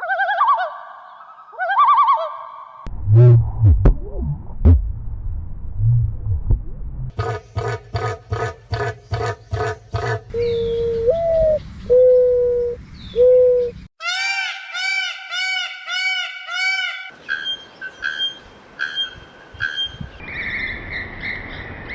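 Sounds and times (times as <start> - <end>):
bird hooting: 8.0 - 20.0.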